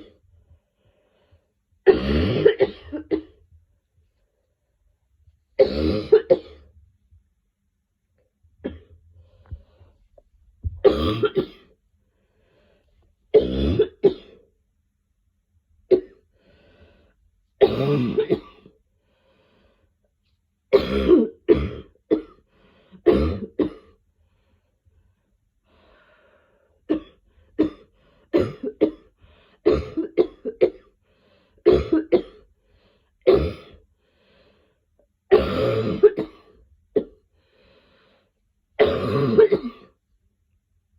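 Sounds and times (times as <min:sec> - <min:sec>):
person coughing: 0:01.9 - 0:03.4, 0:05.6 - 0:06.6, 0:08.6 - 0:08.9, 0:10.8 - 0:11.7, 0:17.6 - 0:18.7, 0:20.7 - 0:22.4, 0:23.1 - 0:23.9, 0:28.4 - 0:29.1, 0:29.7 - 0:30.9, 0:31.7 - 0:32.4, 0:33.3 - 0:33.8, 0:35.3 - 0:37.2, 0:38.8 - 0:40.0.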